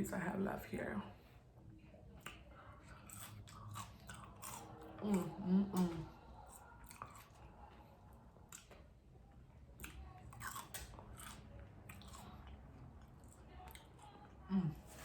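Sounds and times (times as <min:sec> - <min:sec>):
chewing and crunching food: 0:01.1 - 0:15.0.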